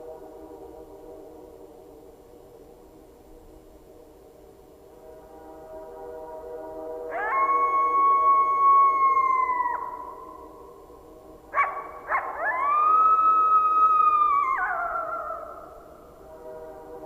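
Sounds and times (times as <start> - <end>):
coyotes howling: 7.1 - 10.7, 11.5 - 16.1
coyote yips: 11.6 - 15.6.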